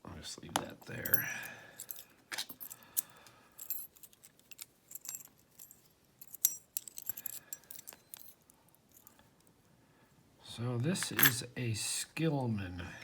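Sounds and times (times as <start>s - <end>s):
small metal parts clinking: 0.9s - 9.2s, 11.0s - 11.4s.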